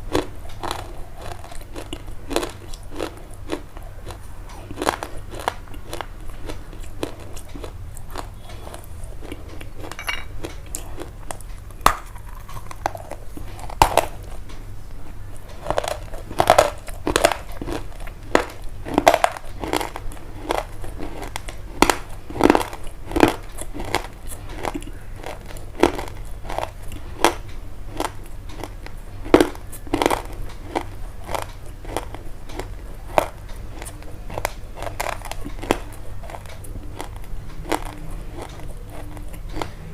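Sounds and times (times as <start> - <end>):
close-up crunching and crackling: 0.0 - 39.9.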